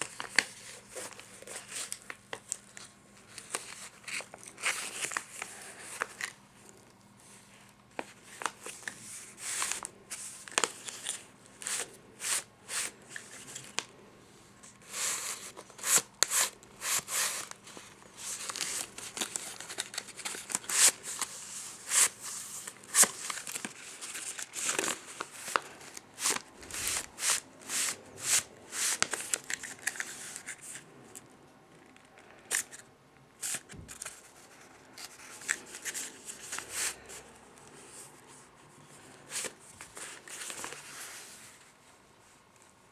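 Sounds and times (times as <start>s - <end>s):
paper crinkling and tearing: 14.8s - 30.8s.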